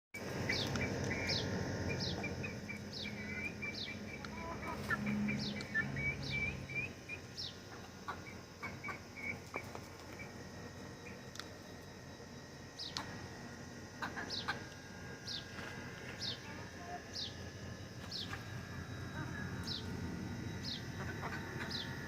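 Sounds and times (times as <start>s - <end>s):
low hum: 0.2s - 22.0s
chicks peeping and chirping: 0.3s - 10.4s.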